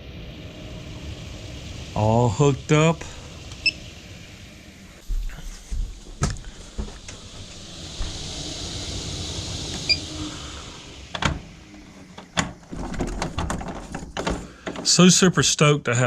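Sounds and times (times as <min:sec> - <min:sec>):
small electric fan motor whirring: 0:00.0 - 0:05.2, 0:06.6 - 0:12.8.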